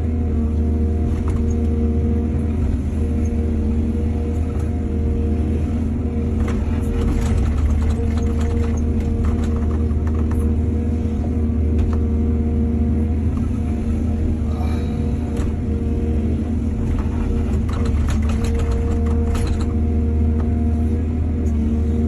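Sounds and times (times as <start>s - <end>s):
diesel excavator engine running: 0.0s - 22.0s
knocks and clatter: 6.4s - 10.5s, 16.8s - 19.8s.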